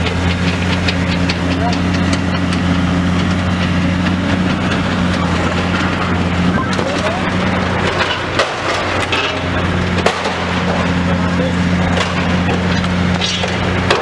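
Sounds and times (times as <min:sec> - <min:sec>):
excavator engine running: 0:00.0 - 0:14.0
building material cracking and crunching: 0:03.5 - 0:14.0.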